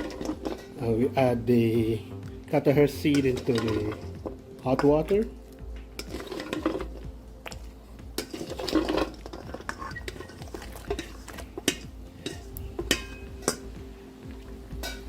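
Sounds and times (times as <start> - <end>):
utensil clinking against metal pot: 3.0 - 5.3, 6.0 - 7.6, 8.2 - 13.7.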